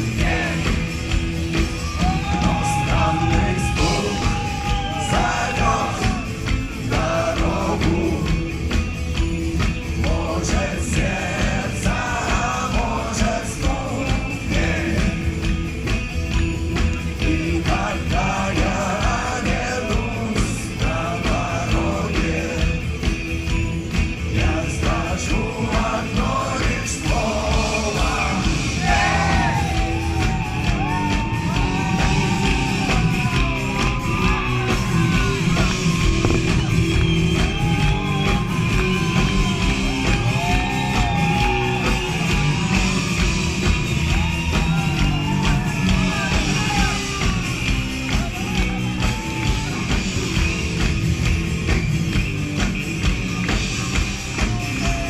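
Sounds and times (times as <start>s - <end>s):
rock band playing live: 0.0s - 55.0s
person singing: 2.0s - 8.7s, 16.8s - 23.2s.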